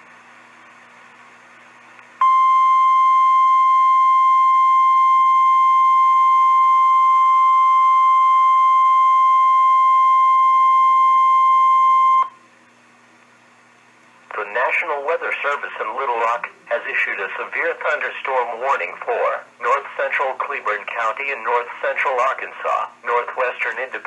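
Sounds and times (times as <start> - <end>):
high alarm beep tone: 2.2 - 12.3
faint receiver hiss: 23.4 - 24.0.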